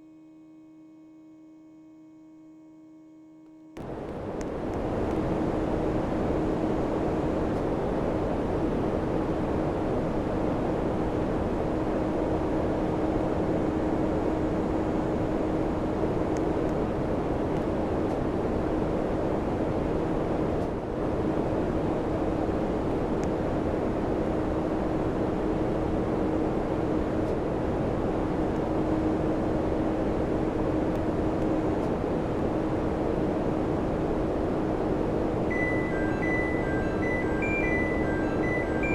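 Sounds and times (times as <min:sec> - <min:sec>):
air conditioner humming: 0:21.0 - 0:38.9.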